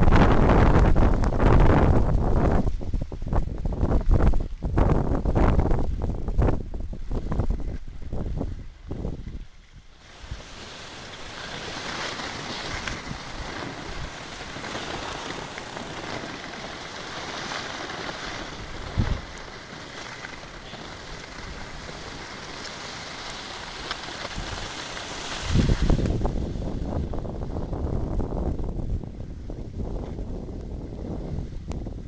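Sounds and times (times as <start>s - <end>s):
wind on microphone: 0.0s - 32.0s
skis scraping over snow: 4.9s - 28.4s.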